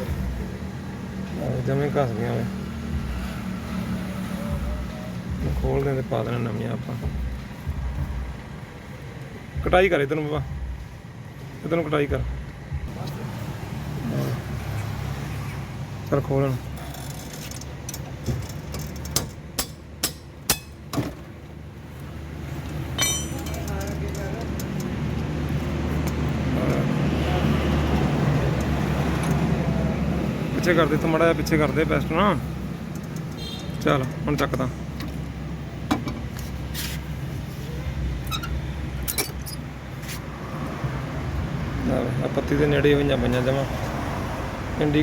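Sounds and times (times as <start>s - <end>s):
metallic clinks of brake parts: 16.8s - 21.0s, 22.7s - 25.2s, 38.2s - 39.7s.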